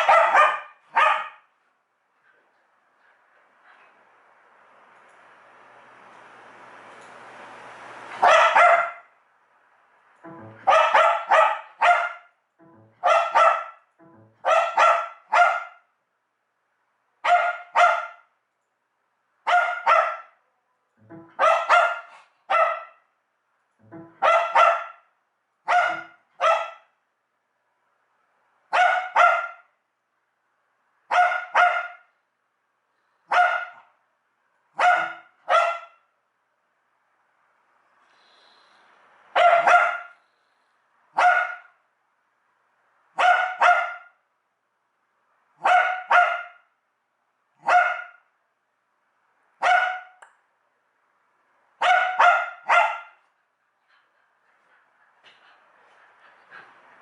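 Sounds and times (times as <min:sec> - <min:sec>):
dog barking: 0:00.0 - 0:01.5, 0:08.2 - 0:09.1, 0:10.6 - 0:12.4, 0:13.0 - 0:15.9, 0:17.2 - 0:18.3, 0:19.4 - 0:20.4, 0:21.3 - 0:23.1, 0:24.2 - 0:26.9, 0:28.7 - 0:29.7, 0:31.1 - 0:32.1, 0:33.3 - 0:33.9, 0:34.8 - 0:36.0, 0:39.4 - 0:40.2, 0:41.2 - 0:41.8, 0:43.2 - 0:44.2, 0:45.6 - 0:46.7, 0:47.6 - 0:48.2, 0:49.6 - 0:50.2, 0:51.8 - 0:53.2.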